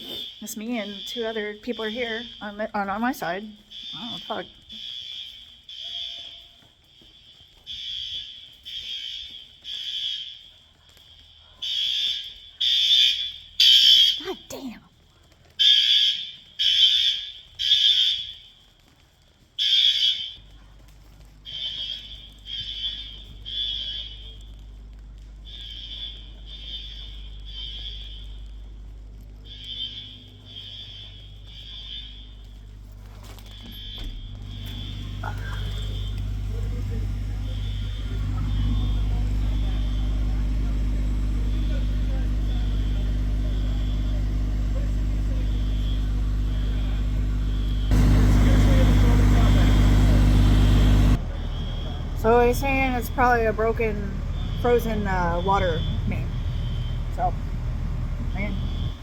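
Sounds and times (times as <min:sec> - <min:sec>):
fire alarm horn blasts: 0:00.0 - 0:14.8, 0:15.5 - 0:59.0
faint steady alarm tone: 0:00.0 - 0:59.0
steady low hum: 0:20.4 - 0:59.0.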